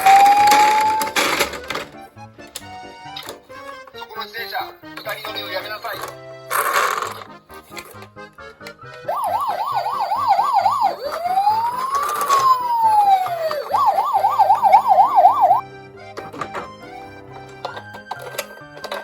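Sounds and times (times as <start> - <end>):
toy police siren: 0.0 - 1.6, 9.1 - 15.6
background music: 0.0 - 19.0.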